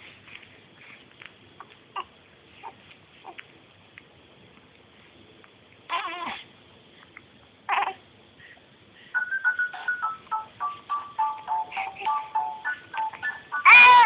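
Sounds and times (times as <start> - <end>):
electronic melody: 9.2 - 14.0.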